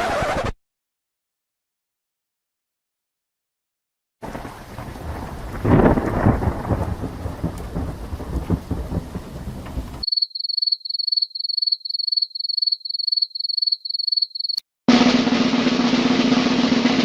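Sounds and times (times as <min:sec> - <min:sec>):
steady rain: 0:04.2 - 0:10.0
thunderclap: 0:04.2 - 0:10.1.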